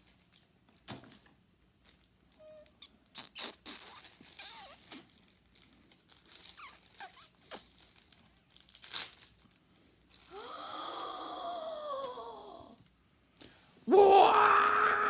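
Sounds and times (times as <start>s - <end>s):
packaging tearing open: 3.2s - 9.6s
drawn-out vocal oooh: 10.3s - 12.8s, 13.9s - 15.0s.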